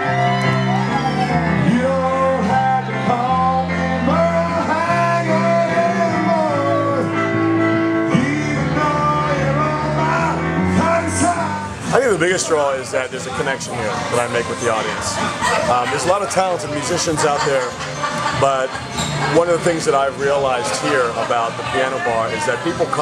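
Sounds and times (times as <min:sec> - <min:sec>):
person singing: 0:00.0 - 0:12.0
piano chords: 0:00.0 - 0:23.0.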